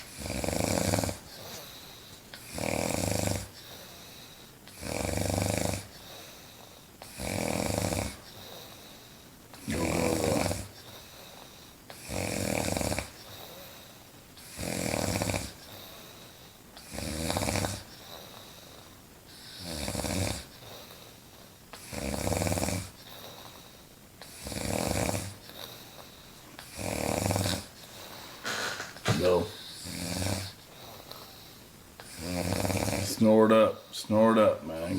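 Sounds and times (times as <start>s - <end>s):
woman snoring loudly: 0.1s - 1.3s, 2.5s - 3.5s, 4.8s - 5.9s, 7.2s - 8.2s, 9.6s - 10.8s, 12.0s - 13.2s, 14.5s - 15.6s, 16.9s - 17.9s, 19.6s - 20.5s, 21.9s - 22.9s, 24.4s - 25.4s, 26.7s - 27.7s, 28.4s - 30.6s, 32.1s - 33.2s.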